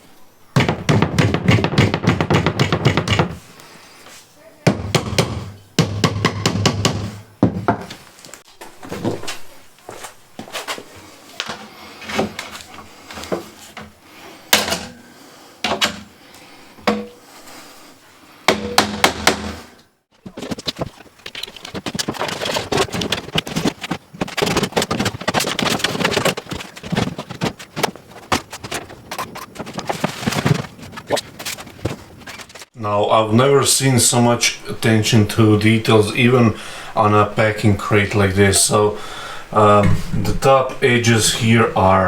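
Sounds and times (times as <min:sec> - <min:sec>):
wooden knocks: 0:00.6 - 0:03.4, 0:04.7 - 0:07.9
wooden crate clatter and scraping: 0:20.1 - 0:32.7.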